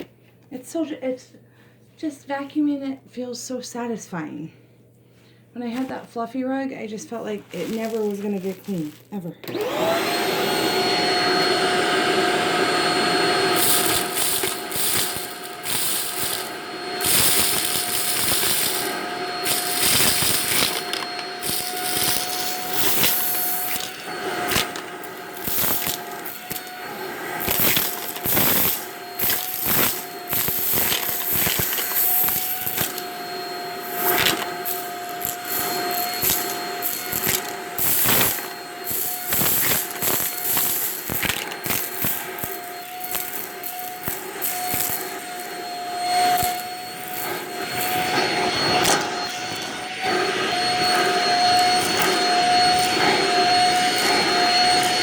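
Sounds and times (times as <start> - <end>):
vacuum cleaner on carpet: 7.5 - 55.0
clicks and crackles: 34.0 - 45.0.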